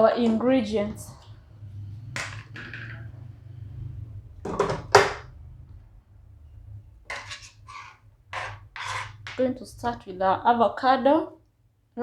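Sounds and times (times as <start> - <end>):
kitchen items knocking: 2.2 - 3.1, 4.4 - 5.3.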